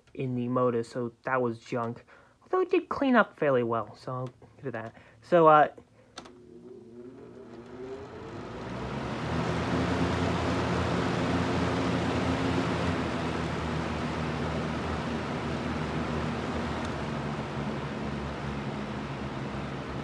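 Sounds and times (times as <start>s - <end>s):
fan air rushing: 6.0s - 20.0s
box fan motor hum: 6.2s - 20.0s.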